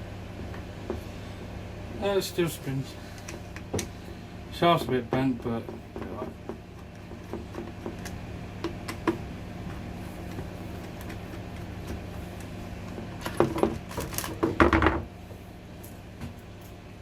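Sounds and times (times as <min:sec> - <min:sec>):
knocks and rattles: 0:13.0 - 0:15.1.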